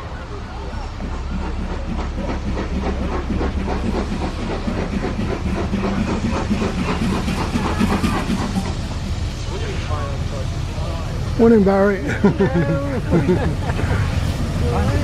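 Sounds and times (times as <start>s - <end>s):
train running with clatter: 0.0s - 15.0s.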